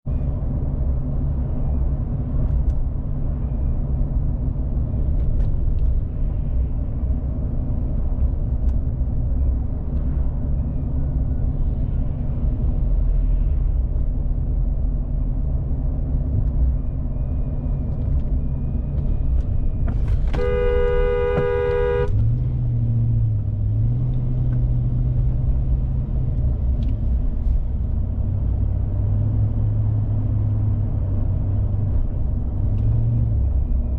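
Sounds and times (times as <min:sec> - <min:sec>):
car engine and road rumble: 0:00.0 - 0:33.9
car horn blast: 0:20.2 - 0:22.2.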